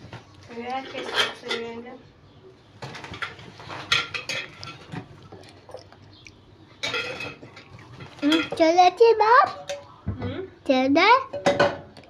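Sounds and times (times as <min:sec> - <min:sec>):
glass jars and kitchenware clinking: 0:00.7 - 0:01.8, 0:02.9 - 0:05.2, 0:06.8 - 0:08.7, 0:11.3 - 0:12.0.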